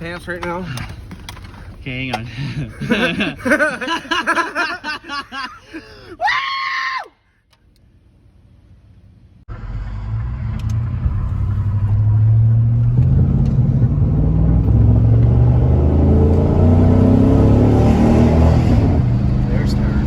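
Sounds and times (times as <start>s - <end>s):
pickup truck accelerating: 9.5s - 20.0s.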